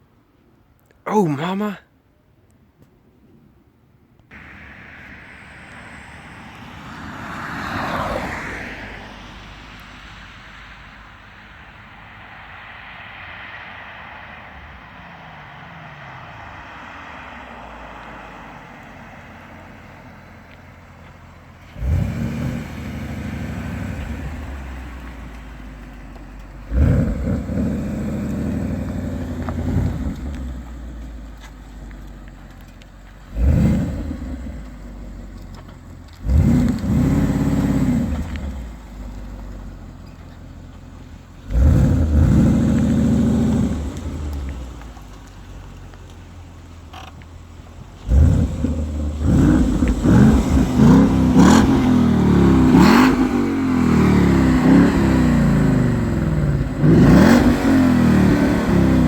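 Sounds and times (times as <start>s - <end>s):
car engine rumbling: 3.0s - 59.0s
loud engine revving bursts: 21.8s - 24.5s, 33.3s - 34.6s, 36.2s - 38.4s, 41.5s - 44.2s, 48.1s - 59.0s.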